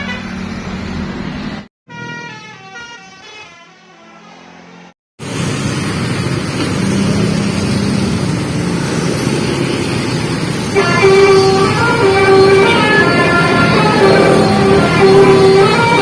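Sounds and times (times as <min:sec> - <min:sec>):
bus engine and road noise: 0:00.0 - 0:03.0, 0:03.9 - 0:16.0
musical horn melody: 0:01.9 - 0:04.3, 0:10.8 - 0:16.0.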